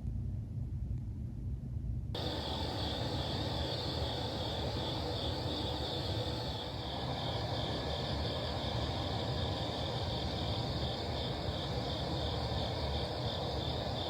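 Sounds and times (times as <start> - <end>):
low rumble: 0.0 - 3.6
crickets chirring: 2.2 - 14.0.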